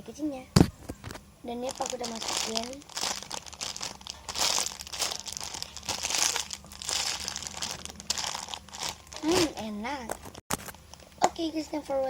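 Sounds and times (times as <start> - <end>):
plastic packaging crinkling: 1.6 - 9.6.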